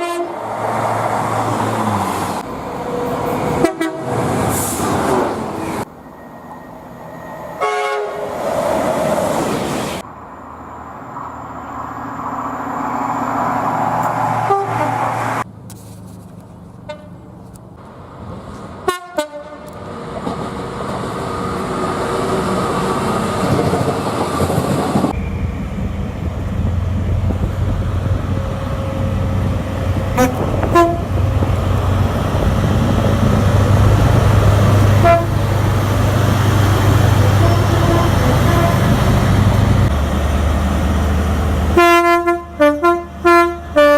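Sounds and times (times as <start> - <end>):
train horns: 0.0 - 0.5, 3.4 - 4.3, 7.5 - 8.3, 14.4 - 15.2, 18.8 - 19.8, 30.1 - 31.3, 34.9 - 35.5, 37.2 - 39.2, 41.7 - 43.9
trains passing: 0.0 - 15.4, 17.8 - 43.9.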